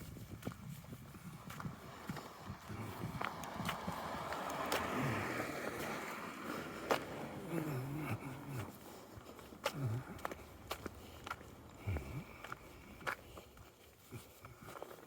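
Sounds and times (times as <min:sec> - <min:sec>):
footsteps on snow: 0:00.0 - 0:15.0
car passing: 0:01.0 - 0:13.1.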